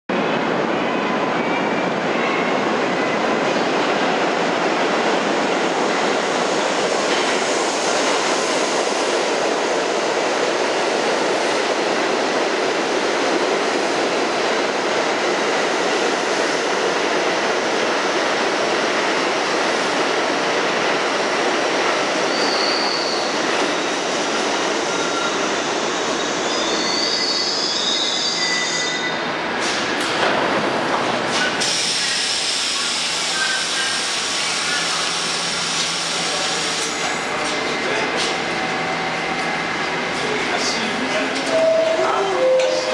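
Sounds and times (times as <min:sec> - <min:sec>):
train wheels rumbling on rails: 0:01.9 - 0:27.0, 0:29.2 - 0:42.9
high wheel squeals: 0:22.3 - 0:23.4, 0:24.8 - 0:29.3, 0:41.4 - 0:42.9.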